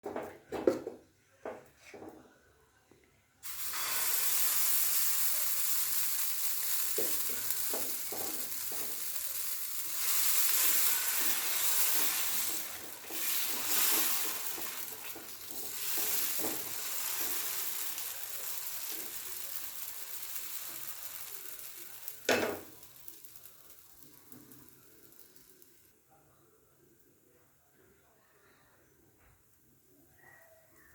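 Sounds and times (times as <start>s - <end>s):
batter sizzling on a griddle: 3.4s - 25.9s.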